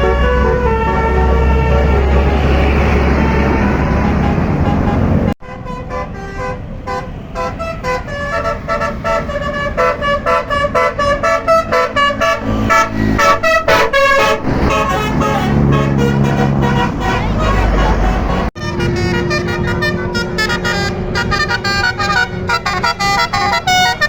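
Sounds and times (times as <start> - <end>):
multi-tone bus horn tune: 0.0 - 24.0.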